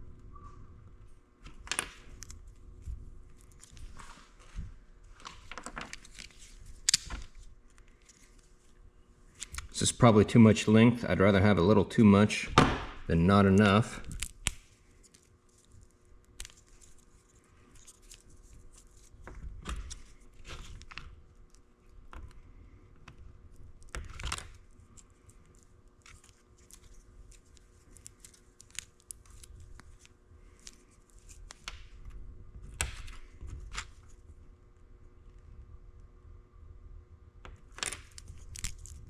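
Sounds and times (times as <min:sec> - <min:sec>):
wire being snipped: 0:06.8 - 0:07.3
wire rustling: 0:13.6 - 0:22.2, 0:23.8 - 0:34.3, 0:37.7 - 0:39.0.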